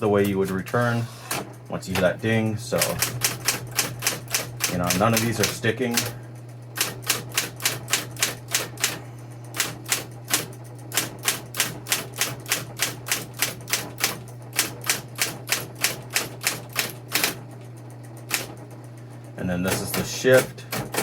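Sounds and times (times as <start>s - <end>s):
typewriter motor hum: 0.0s - 21.0s
typewriter key strikes: 1.9s - 6.2s, 6.8s - 9.0s, 9.6s - 17.4s, 19.6s - 21.0s.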